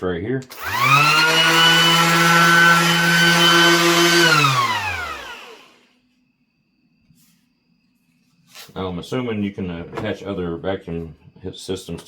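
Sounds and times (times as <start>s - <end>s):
orbital sander whining: 0.5s - 5.8s.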